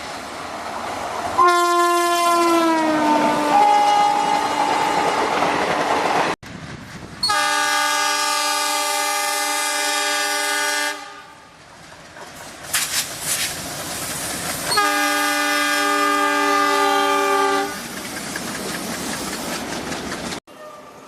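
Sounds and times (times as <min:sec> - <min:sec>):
locomotive air horn: 0:01.4 - 0:05.1, 0:07.2 - 0:11.4, 0:14.7 - 0:17.8
wheels clattering on rails: 0:11.6 - 0:14.8, 0:17.4 - 0:20.4.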